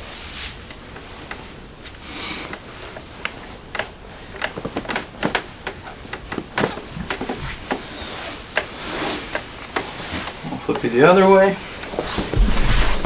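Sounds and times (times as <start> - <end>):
sharp clicks and knocks: 12.0 - 13.0.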